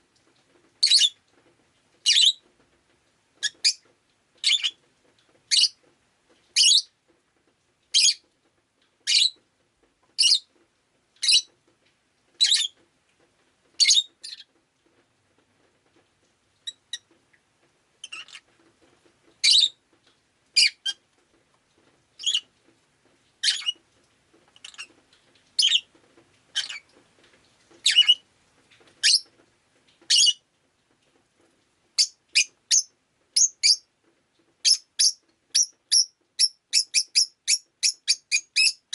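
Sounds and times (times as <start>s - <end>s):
bird high-pitched chirps: 0.8s - 1.2s, 2.1s - 2.4s, 4.4s - 4.8s, 6.6s - 6.9s, 9.1s - 9.4s, 19.4s - 19.8s, 23.4s - 23.8s, 27.9s - 28.2s, 29.0s - 29.3s, 32.0s - 33.8s, 34.6s - 38.9s.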